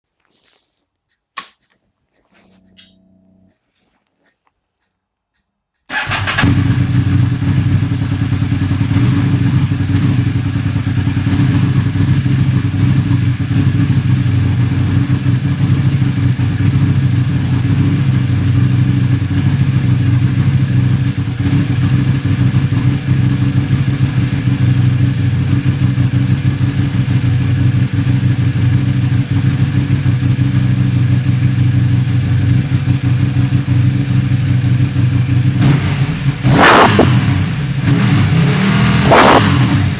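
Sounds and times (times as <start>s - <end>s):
motorcycle engine idling: 5.9s - 36.5s.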